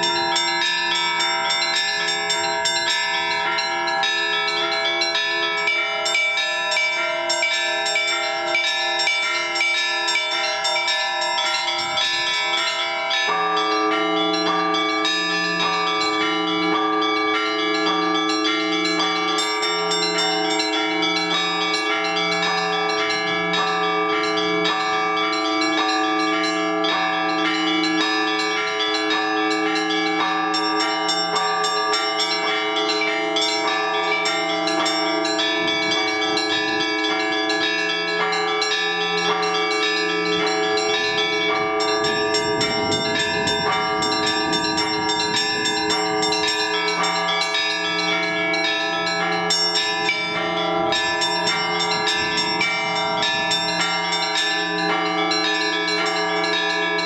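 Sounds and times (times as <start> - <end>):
mid-sized bells ringing: 0.0 - 57.0
small bells chiming rapidly: 0.0 - 57.0
deep bell strikes: 40.2 - 47.8.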